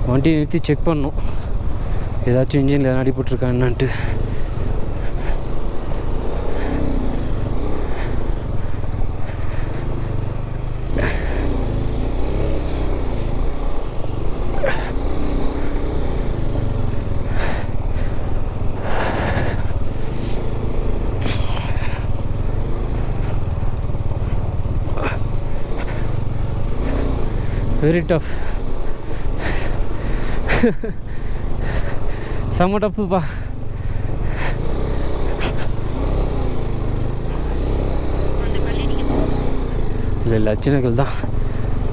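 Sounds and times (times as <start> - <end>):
motorcycle engine labouring: 0.0 - 41.9.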